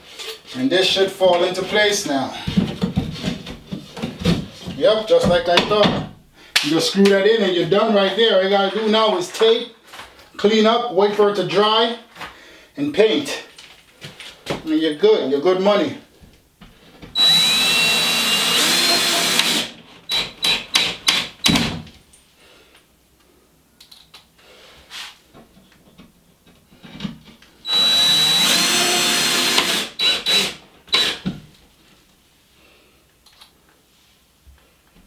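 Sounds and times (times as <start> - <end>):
power drill driving screws: 17.2 - 21.3, 27.7 - 31.2.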